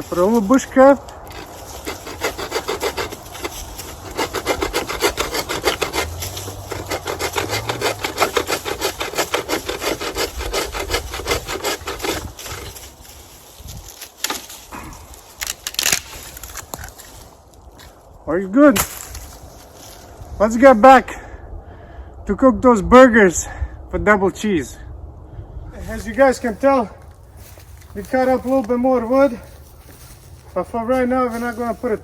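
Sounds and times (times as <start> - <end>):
hand saw cutting branch: 0.0 - 17.3.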